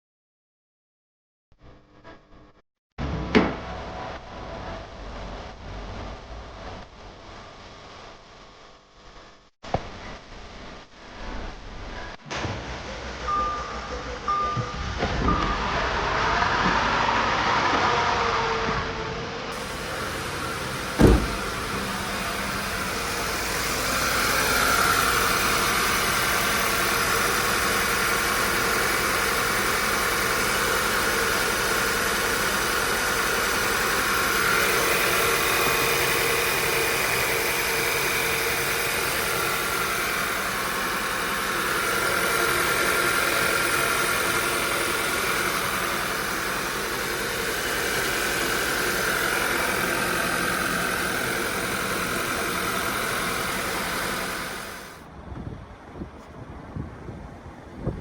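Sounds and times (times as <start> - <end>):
car engine running: 19.5 - 55.0
sharp knock: 21.0 - 21.6.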